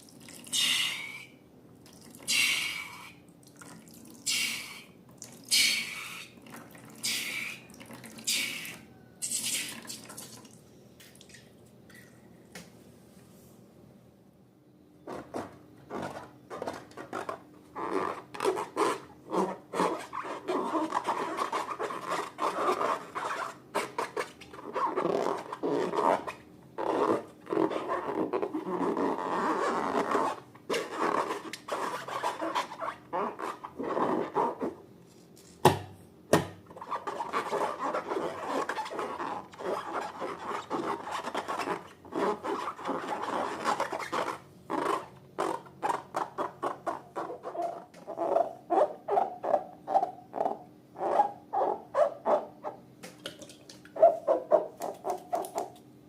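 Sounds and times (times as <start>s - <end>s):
slime rubbing and scraping: 15.1s - 35.3s, 36.7s - 52.8s.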